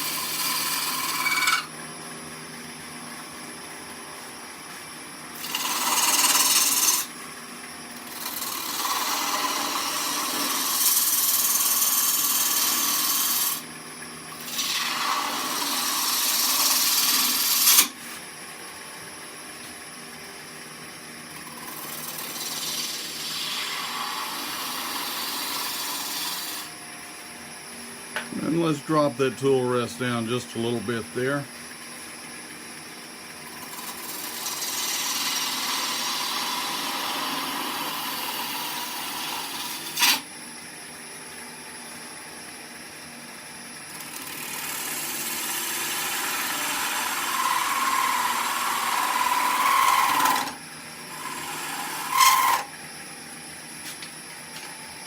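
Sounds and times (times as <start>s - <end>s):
gouge cutting wood hiss: 0.0s - 1.7s, 5.4s - 7.1s, 8.0s - 13.7s, 14.3s - 18.2s, 21.4s - 26.7s, 33.4s - 40.3s, 44.0s - 52.7s
lathe humming: 0.0s - 1.7s, 5.4s - 7.1s, 8.0s - 13.7s, 14.4s - 17.9s, 21.4s - 26.8s, 33.3s - 40.2s, 43.9s - 55.0s.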